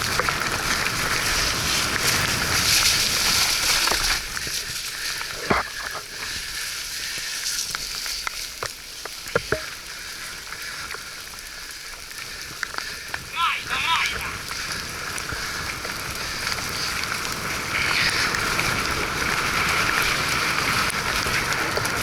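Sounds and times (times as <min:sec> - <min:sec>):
wet hiss of riding through rain: 0:00.0 - 0:22.0.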